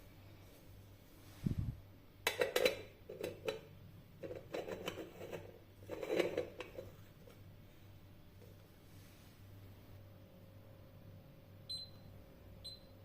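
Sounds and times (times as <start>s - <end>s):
low steady hum: 0.0s - 13.0s
household objects clicking and clattering: 2.3s - 7.4s.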